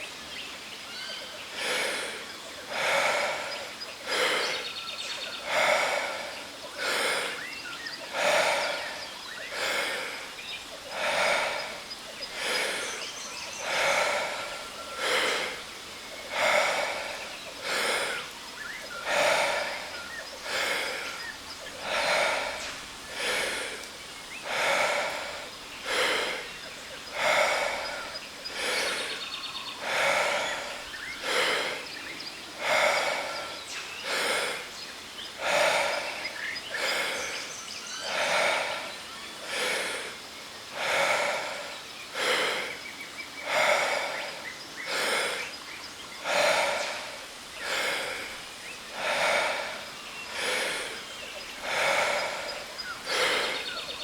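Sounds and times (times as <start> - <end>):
person breathing forcefully: 1.5 - 54.0
waterfall rushing: 8.0 - 29.2.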